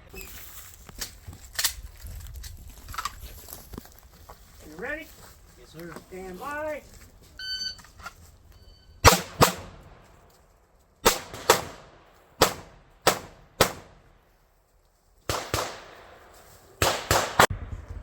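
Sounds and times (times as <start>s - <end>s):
gunshots: 9.0s - 10.0s, 11.0s - 14.1s, 15.3s - 17.6s.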